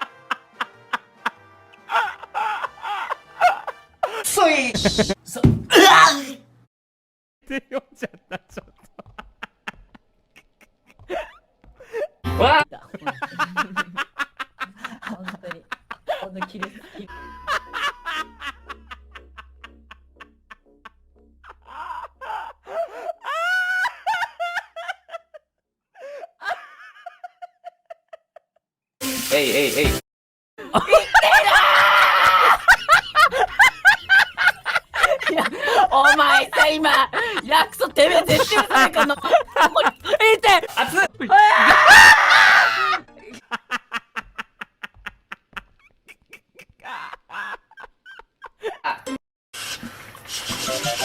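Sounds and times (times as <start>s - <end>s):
man wheezy laughing: 1.8s - 4.3s, 10.9s - 15.1s, 16.1s - 28.4s, 30.6s - 36.1s, 38.3s - 43.0s, 44.0s - 49.2s
man laughing in high squeals: 17.0s - 19.7s, 21.5s - 25.3s, 30.7s - 35.9s, 41.2s - 43.1s, 45.7s - 49.2s.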